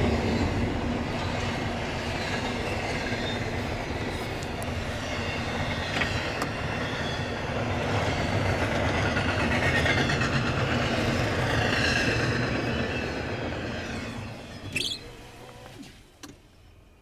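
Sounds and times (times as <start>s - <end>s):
freight train rumbling on rails: 0.0s - 17.0s
metallic wheel squeal: 12.6s - 15.4s.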